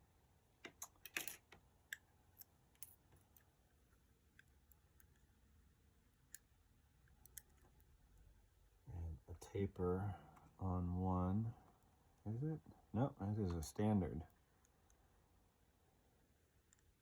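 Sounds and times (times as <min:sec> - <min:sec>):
small clicks of lock pins: 0:00.7 - 0:03.5.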